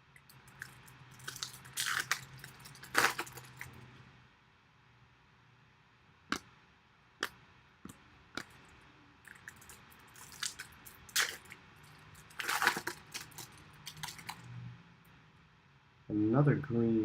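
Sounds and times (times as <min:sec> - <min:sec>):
wrapper and cards crinkling: 0:00.3 - 0:03.9, 0:09.3 - 0:14.5.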